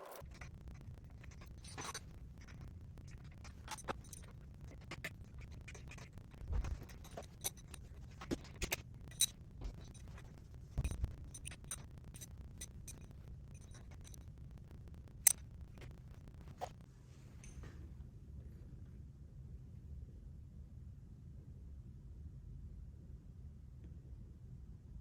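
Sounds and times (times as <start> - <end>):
hand tools clicking on metal: 0.1 - 14.3.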